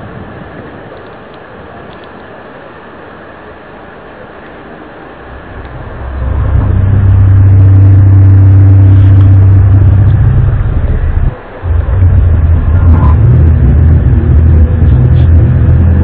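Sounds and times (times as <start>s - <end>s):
low droning hum: 3.3s - 16.0s.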